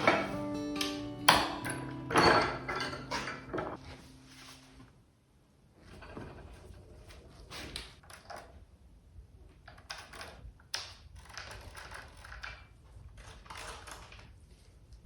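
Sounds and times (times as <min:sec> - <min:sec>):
clicks and scrapes of hand work: 0:09.5 - 0:15.0.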